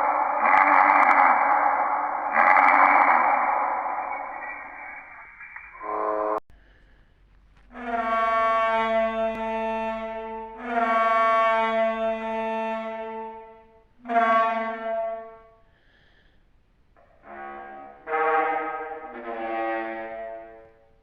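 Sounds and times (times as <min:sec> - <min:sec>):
horn-like dinosaur honks: 0:00.0 - 0:04.8, 0:07.7 - 0:15.6, 0:17.1 - 0:20.8.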